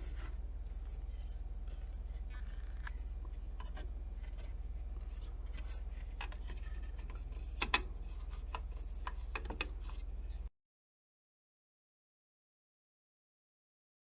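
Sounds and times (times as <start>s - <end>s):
steady low hum: 0.0s - 10.5s.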